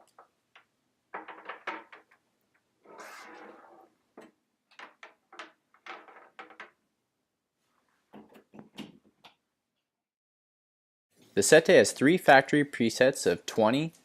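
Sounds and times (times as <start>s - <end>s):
rustling scrape: 2.8s - 3.9s.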